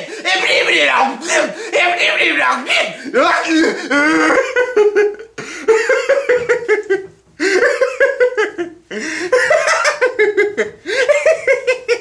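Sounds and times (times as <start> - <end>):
person laughing hard: 3.5 - 12.0.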